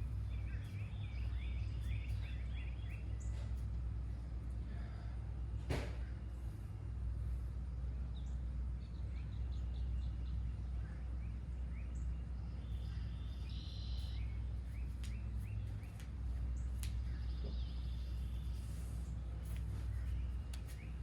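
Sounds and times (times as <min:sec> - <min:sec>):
birds chirping and calling: 0:00.0 - 0:03.6, 0:08.2 - 0:19.2
steady low rumble: 0:00.0 - 0:21.0
buzzy bird trill: 0:12.6 - 0:16.0.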